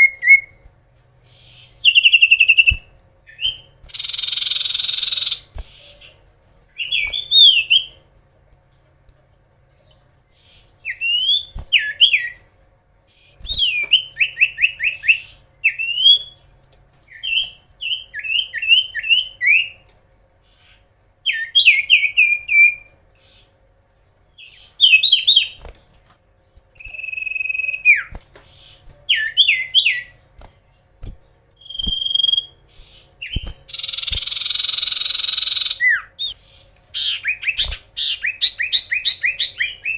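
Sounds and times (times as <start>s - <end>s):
bird whistling song: 0.0s - 0.6s, 1.4s - 6.1s, 6.8s - 8.0s, 10.8s - 12.5s, 13.2s - 16.5s, 17.1s - 19.8s, 21.2s - 22.9s, 24.4s - 25.6s, 26.8s - 30.1s, 31.6s - 36.4s, 37.0s - 39.9s
harsh buzzy bird chatter: 1.2s - 8.0s, 26.7s - 39.9s.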